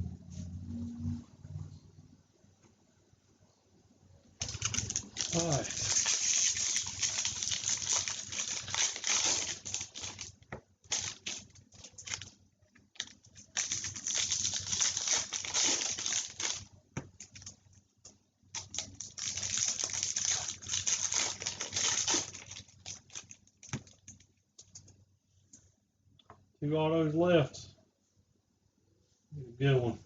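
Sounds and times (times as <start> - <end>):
cards rustling and flicking: 4.4 - 10.3.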